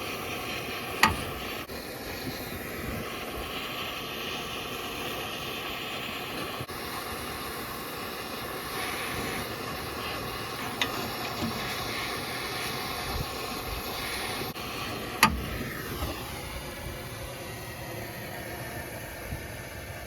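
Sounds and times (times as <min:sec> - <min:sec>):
gas torch hissing: 0:00.0 - 0:20.0
sharp click: 0:01.0 - 0:01.4.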